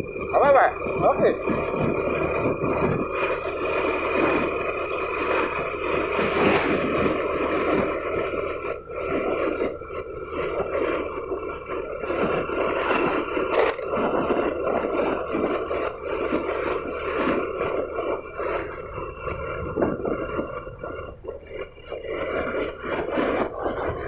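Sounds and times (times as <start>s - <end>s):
road and wind noise: 0.0s - 24.0s
vehicle engine running: 0.0s - 24.0s.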